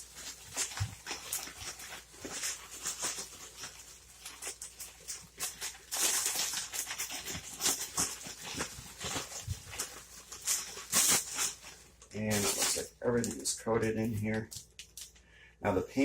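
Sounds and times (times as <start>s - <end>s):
plastic bag crinkling: 0.0s - 15.2s.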